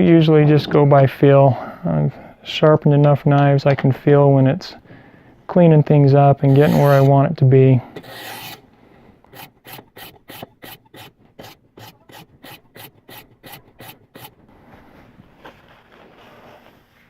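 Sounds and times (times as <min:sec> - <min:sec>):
faint scraping: 0:06.4 - 0:09.8, 0:11.4 - 0:17.0
sharpening stone rasping on knife: 0:06.5 - 0:07.1, 0:08.0 - 0:08.6, 0:09.3 - 0:14.4.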